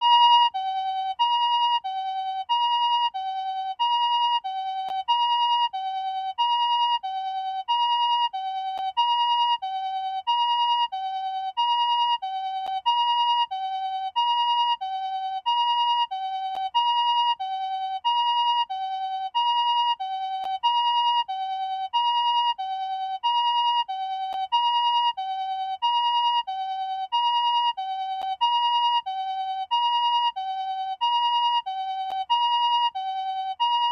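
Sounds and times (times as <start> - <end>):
two-tone electronic siren: 0.0 - 33.9.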